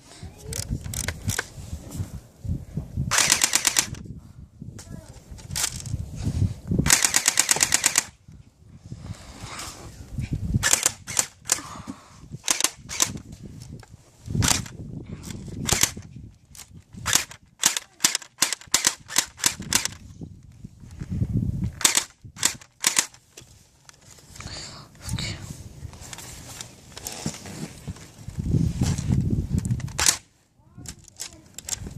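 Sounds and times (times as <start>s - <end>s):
airsoft gun full-auto burst: 3.1s - 4.0s, 6.9s - 8.1s.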